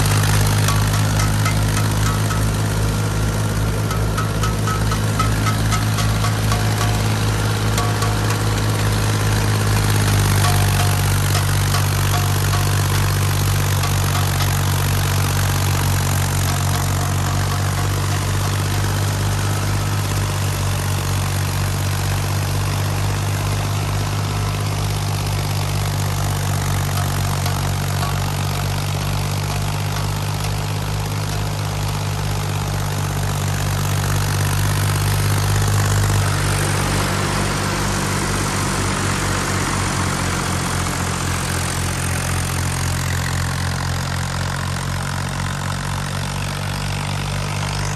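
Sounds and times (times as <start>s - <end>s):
thresher rushing noise: 0.0s - 32.3s
tractor diesel engine running: 0.0s - 47.9s.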